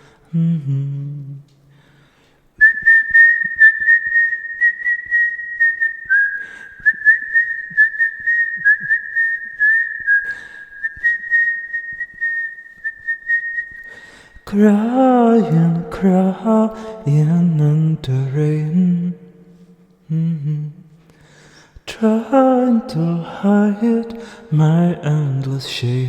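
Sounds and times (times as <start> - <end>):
whistled melody: 2.6 - 14.1.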